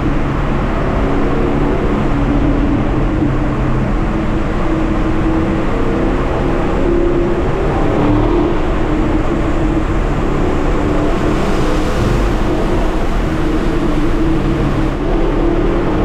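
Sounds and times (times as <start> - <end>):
road noise: 0.0 - 16.0
car engine running: 9.4 - 15.1.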